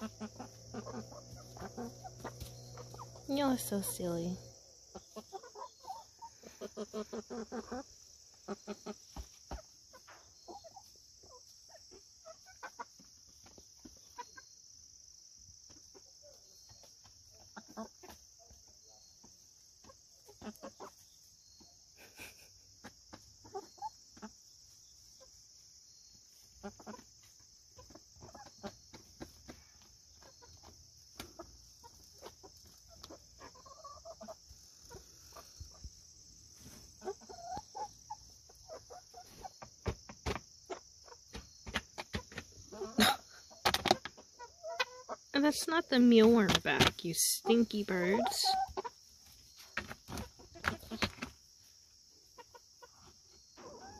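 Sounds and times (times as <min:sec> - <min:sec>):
chickens clucking: 0:00.0 - 0:53.9
insect chorus: 0:00.0 - 0:53.9.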